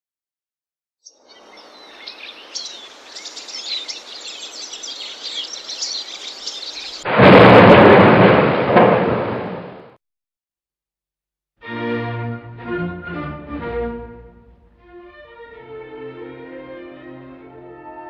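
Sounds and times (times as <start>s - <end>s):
birds chirping: 1.0s - 7.1s
thunder clap and rumble: 6.9s - 10.0s.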